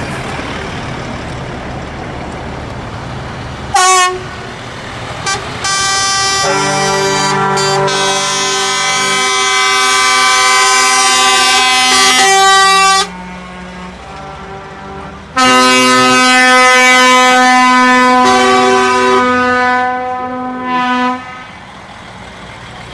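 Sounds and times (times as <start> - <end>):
truck air horns chord blasts: 3.7 - 4.5, 5.2 - 21.7.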